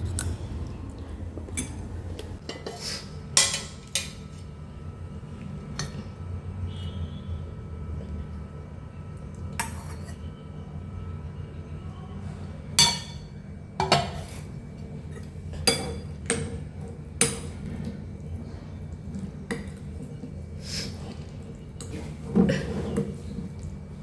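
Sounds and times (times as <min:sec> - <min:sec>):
steady low hum: 0:00.0 - 0:24.0
dishes and utensils clinking: 0:02.4 - 0:04.4, 0:09.6 - 0:10.3, 0:12.8 - 0:17.6.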